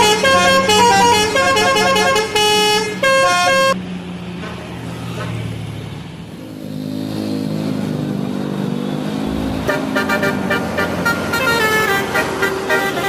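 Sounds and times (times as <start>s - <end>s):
bus engine running: 0.0s - 13.0s
air horns playing a quick tune: 9.2s - 13.0s.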